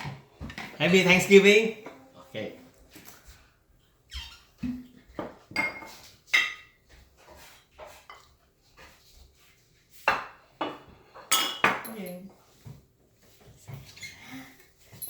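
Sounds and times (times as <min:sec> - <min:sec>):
cutlery and plates clinking: 0:05.2 - 0:08.4, 0:10.1 - 0:12.2.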